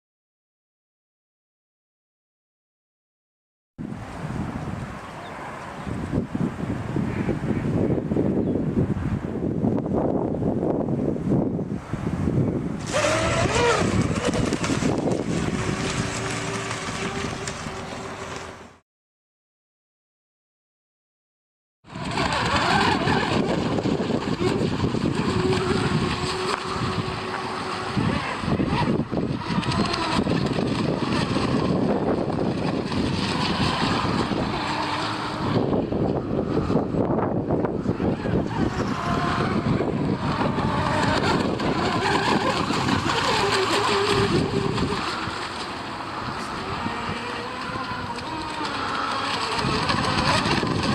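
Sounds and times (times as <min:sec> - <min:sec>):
wind buffeting microphone: 0:03.8 - 0:18.6, 0:21.9 - 0:50.9
model boat motor running: 0:12.6 - 0:18.8, 0:21.9 - 0:50.9.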